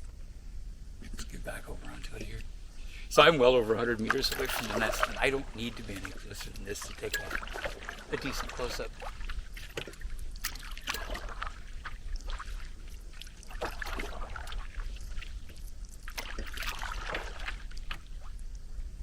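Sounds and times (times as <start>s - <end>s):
canoe paddle strokes in water: 3.4s - 18.8s
water splashes and drips: 3.5s - 18.6s.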